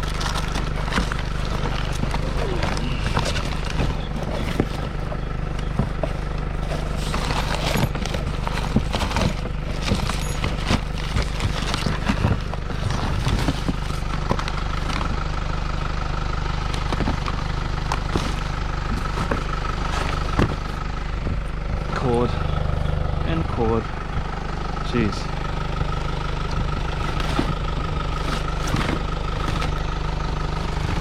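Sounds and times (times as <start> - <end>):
electronics and cords rummaged: 0.0 - 31.0.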